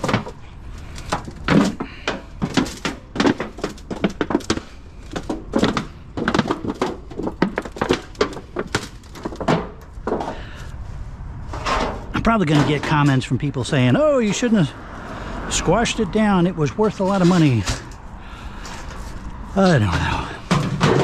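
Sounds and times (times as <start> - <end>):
sheet metal tubes crushed: 0.0 - 10.7, 11.5 - 13.3, 16.8 - 21.0.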